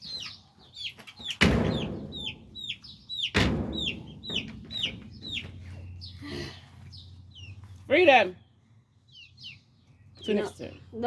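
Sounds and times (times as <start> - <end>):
chicks peeping: 0.0 - 8.2, 8.9 - 11.0
loud thumps: 1.4 - 2.6, 3.2 - 5.6.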